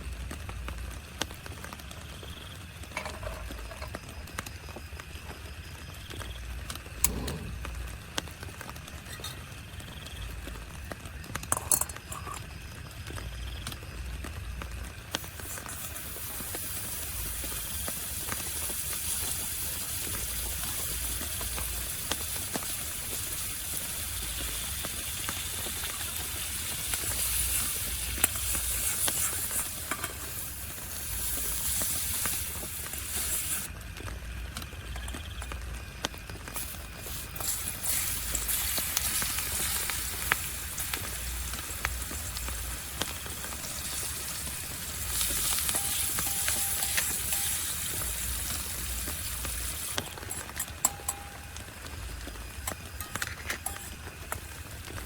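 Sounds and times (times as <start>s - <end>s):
utensils clicking and clinking: 11.4s - 12.5s, 36.5s - 55.0s
food sizzling in a pan: 14.1s - 34.4s, 36.1s - 55.0s.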